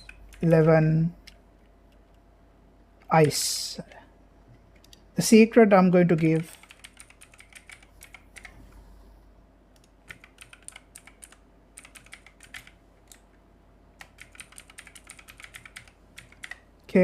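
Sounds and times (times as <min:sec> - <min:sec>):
typing on computer keyboard: 0:06.4 - 0:08.6, 0:09.8 - 0:13.2, 0:14.0 - 0:16.7.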